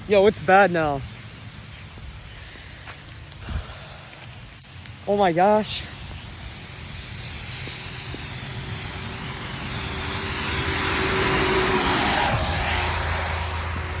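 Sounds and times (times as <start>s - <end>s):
tyres hissing on wet road: 0.0s - 14.0s
car engine passing: 9.0s - 14.0s.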